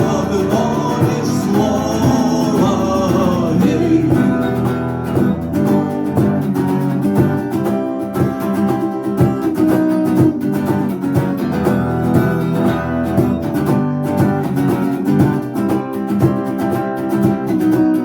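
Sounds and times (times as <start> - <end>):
acoustic guitar strumming: 0.0 - 18.0.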